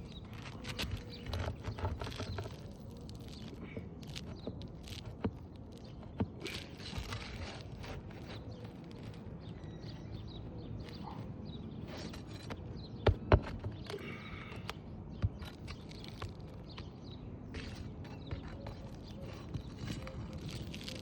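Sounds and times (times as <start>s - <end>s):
scraping on roof shingles: 0.2s - 9.2s.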